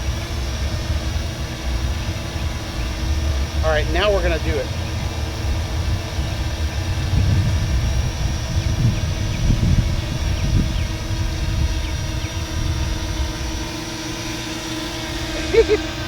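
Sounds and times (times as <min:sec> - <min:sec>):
drone propellers humming: 0:00.0 - 0:16.0
wind rumble on microphone: 0:00.0 - 0:16.0.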